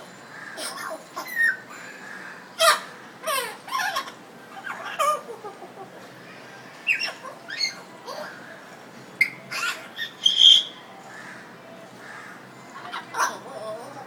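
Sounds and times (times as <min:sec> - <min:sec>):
parrot whistles and squawks: 0:06.9 - 0:08.3, 0:09.2 - 0:10.8.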